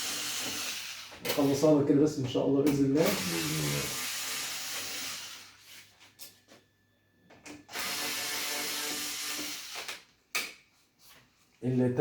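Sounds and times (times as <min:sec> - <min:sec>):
power tool running: 0:00.0 - 0:01.6, 0:02.9 - 0:05.6, 0:07.7 - 0:10.0.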